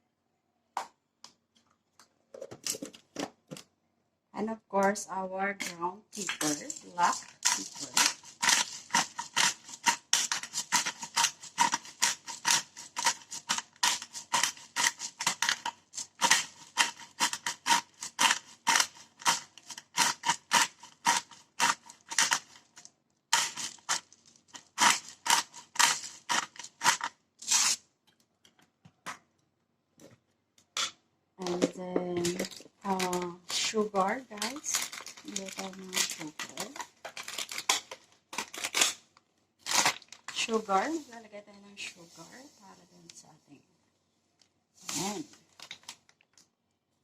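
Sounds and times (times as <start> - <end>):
pepper mill grinding: 5.6 - 27.8, 31.4 - 39.0, 39.6 - 41.2.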